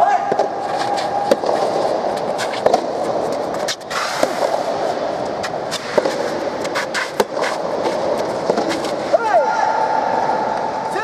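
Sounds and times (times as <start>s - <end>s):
rackets striking tennis ball: 0.2s - 9.3s
ball bouncing: 0.3s - 4.8s, 5.4s - 9.2s.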